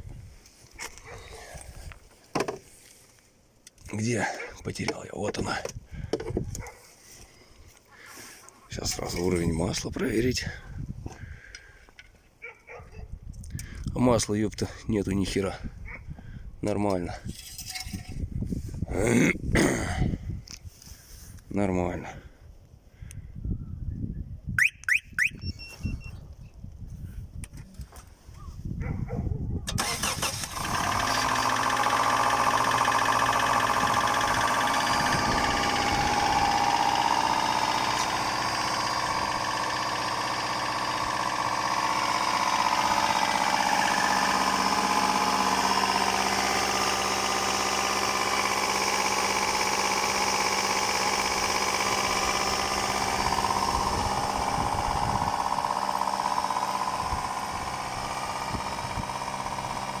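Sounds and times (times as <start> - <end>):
car engine with piston knocking: 2.3 - 2.7, 4.8 - 6.8, 29.7 - 60.0.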